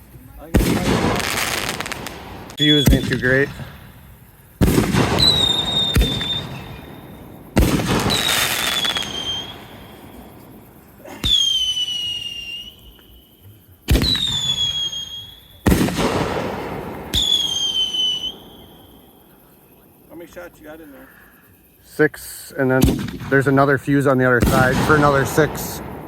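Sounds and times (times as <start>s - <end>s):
firework bangs: 0.4s - 19.4s, 22.8s - 26.0s
firework whistle falling in pitch: 5.2s - 7.0s, 8.0s - 9.9s, 11.2s - 13.4s, 14.0s - 15.6s, 17.1s - 19.1s.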